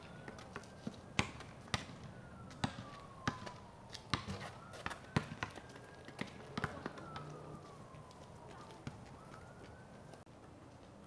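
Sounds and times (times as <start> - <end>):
distant siren wailing: 0.0 - 10.4
basketball bouncing: 1.2 - 6.9.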